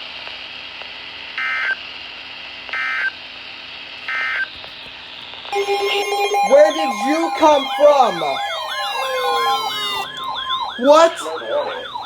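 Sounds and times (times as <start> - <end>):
steady alert tone: 5.6 - 12.0
warbling digital data tones: 5.6 - 12.0.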